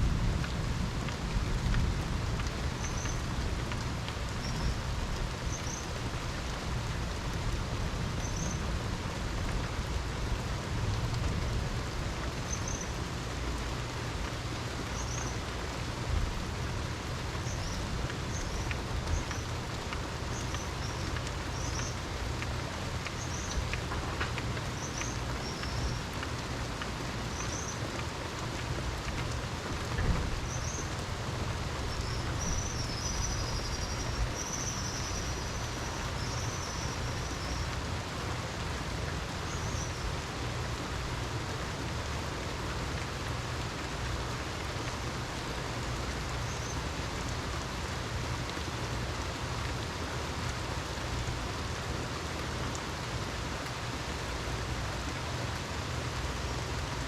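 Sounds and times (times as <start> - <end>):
low steady rumble: 0.0 - 5.3
steady rain falling: 0.0 - 57.0.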